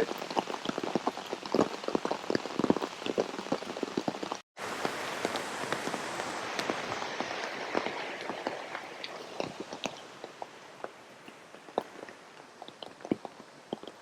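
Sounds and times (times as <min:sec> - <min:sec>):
loud single raindrops: 0:00.0 - 0:10.3
heavy rain: 0:00.0 - 0:14.0.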